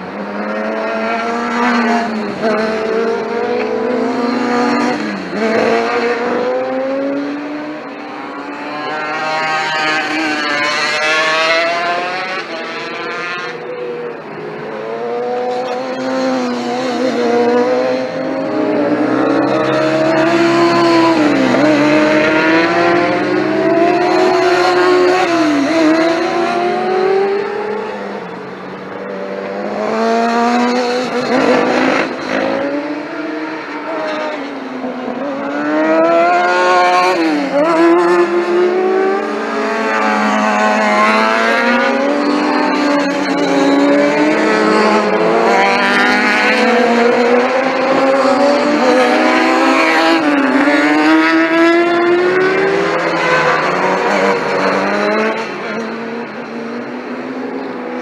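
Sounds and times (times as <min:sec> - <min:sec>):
racing motorcycle engines accelerating: 0:00.0 - 0:58.0.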